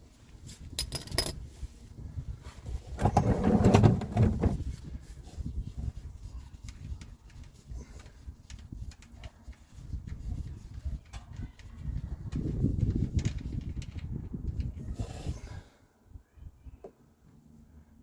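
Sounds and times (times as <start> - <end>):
socket wrench clinking on metal: 0.8 - 1.4.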